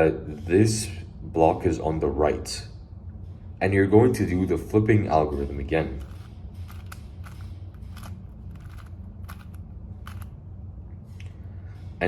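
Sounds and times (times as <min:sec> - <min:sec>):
steady low hum: 0:00.0 - 0:12.0
puzzle cube plastic clicks: 0:06.0 - 0:10.3.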